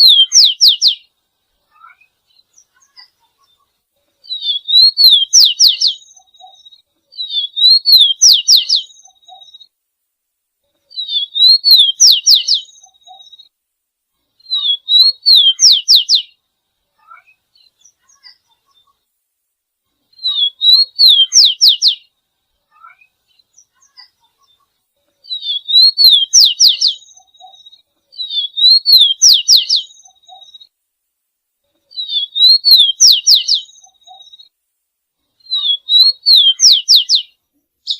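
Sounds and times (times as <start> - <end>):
songbird whistling phrase: 4.3 - 6.6, 7.2 - 9.6, 10.9 - 13.3, 14.4 - 16.3, 20.2 - 22.0, 25.3 - 27.6, 28.2 - 30.6, 31.9 - 34.4, 35.4 - 37.3.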